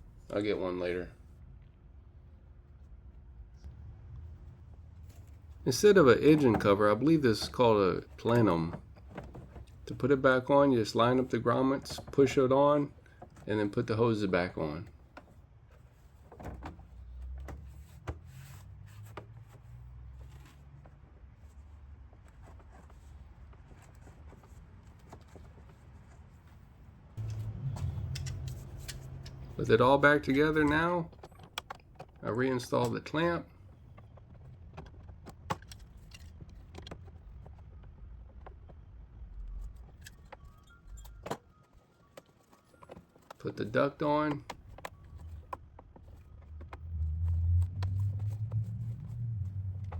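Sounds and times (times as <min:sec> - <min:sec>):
plastic parts clicking and knocking: 0:05.1 - 0:18.2, 0:27.2 - 0:48.8
low steady rumble: 0:27.1 - 0:31.0, 0:46.1 - 0:49.9
clicks of parts being fitted: 0:27.2 - 0:32.2.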